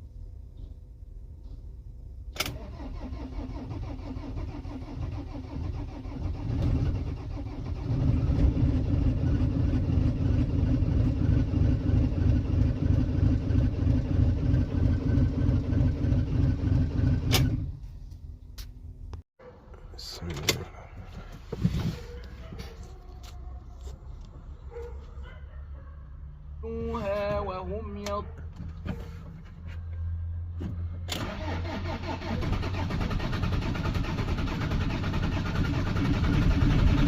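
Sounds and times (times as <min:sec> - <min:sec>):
diesel engine running: 0:03.6 - 0:17.8.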